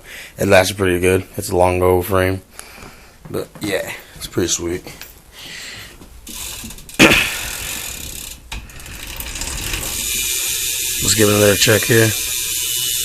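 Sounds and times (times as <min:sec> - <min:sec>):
bicycle hub ratchet clicking: 0:06.2 - 0:13.0.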